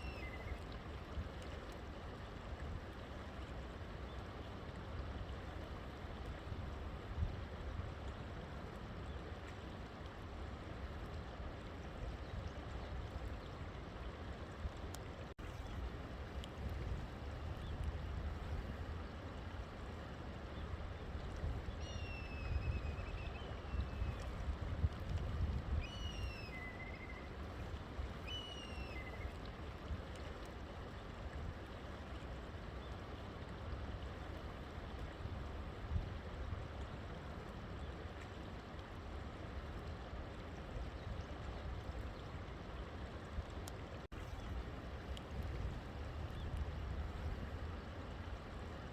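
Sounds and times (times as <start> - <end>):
river water flowing: 0.0 - 48.9
bird calling: 25.8 - 27.3, 28.2 - 29.3.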